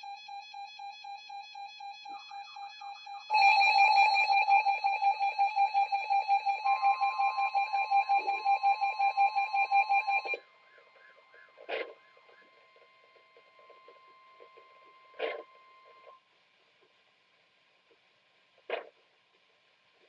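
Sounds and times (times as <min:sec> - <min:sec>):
rapidly pulsing high beep: 0:00.0 - 0:10.4.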